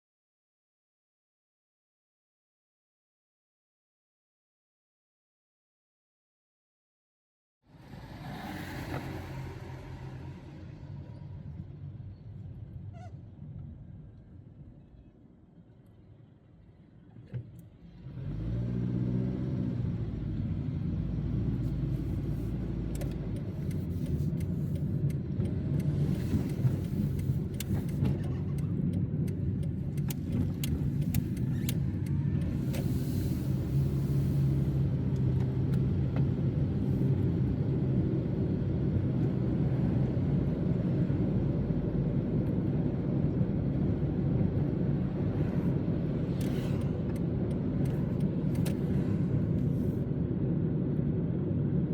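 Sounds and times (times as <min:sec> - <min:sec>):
car engine rumble: 0:07.7 - 0:51.9.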